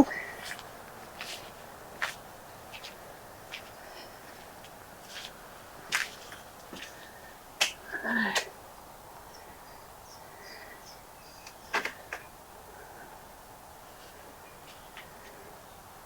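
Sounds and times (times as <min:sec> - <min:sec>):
faint bird chirps: 0:09.2 - 0:13.1.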